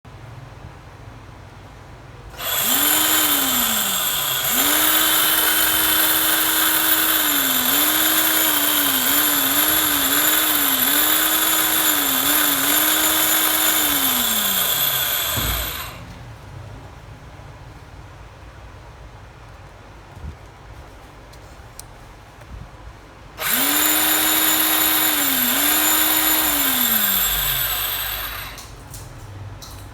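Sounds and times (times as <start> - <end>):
cordless drill running: 2.3 - 16.0, 23.4 - 28.7
low thump: 15.4 - 15.8.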